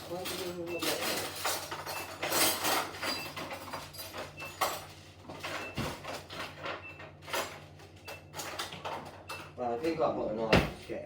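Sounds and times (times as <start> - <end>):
knocks in kitchen cupboards: 10.5 - 10.8.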